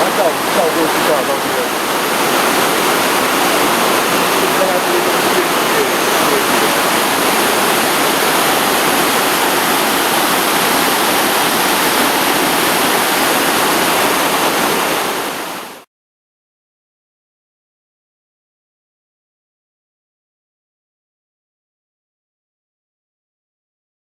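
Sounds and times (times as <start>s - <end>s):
waterfall rushing: 0.0s - 15.8s.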